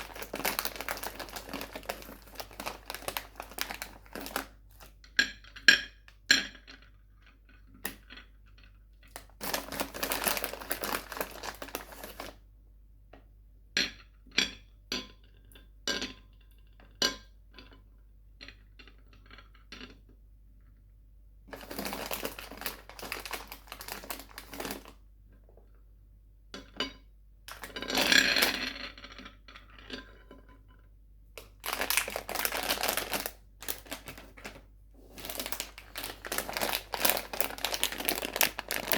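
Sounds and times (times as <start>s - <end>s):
sweet wrappers crinkling: 0.0s - 5.0s, 9.0s - 12.4s, 21.5s - 25.0s, 27.5s - 28.6s, 31.4s - 38.9s.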